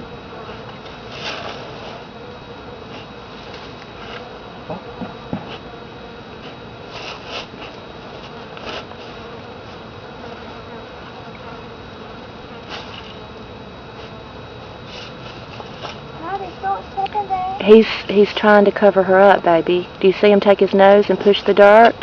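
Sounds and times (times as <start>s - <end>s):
steady buzzing hum: 0.0s - 22.0s.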